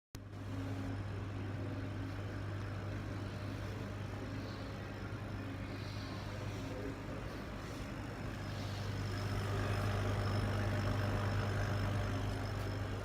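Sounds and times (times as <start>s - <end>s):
faint high whine: 0.2s - 13.0s
laser cutter low hum and hiss: 0.2s - 13.0s.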